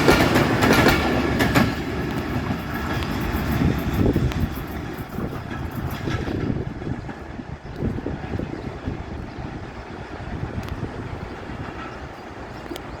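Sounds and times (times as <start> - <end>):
train wheel knocks: 0.0 - 8.0
train wheels rumbling on rails: 0.0 - 13.0.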